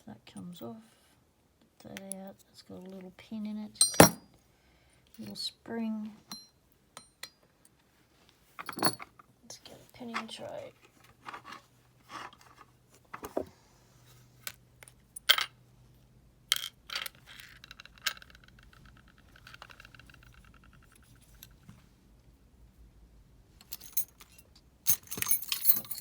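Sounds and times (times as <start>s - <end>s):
metallic clinks: 3.8s - 4.2s, 23.6s - 26.0s.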